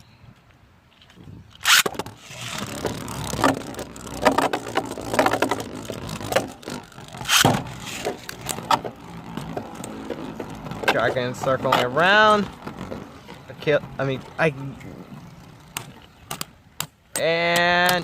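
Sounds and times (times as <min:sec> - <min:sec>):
launcher zipping rip: 0:01.6 - 0:04.2, 0:04.8 - 0:09.1.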